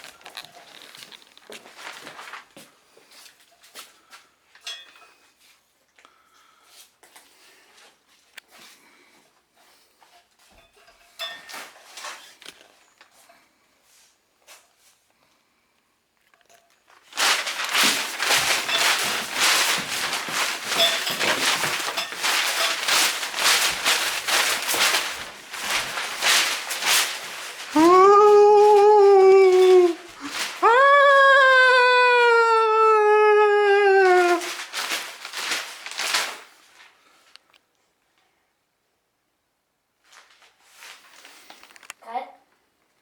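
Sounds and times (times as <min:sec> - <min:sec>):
animal long wailing calls: 0:27.7 - 0:34.6.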